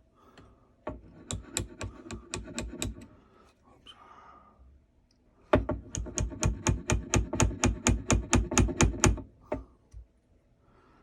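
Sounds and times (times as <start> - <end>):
mallet tapping chisel into wood: 5.6 - 9.2.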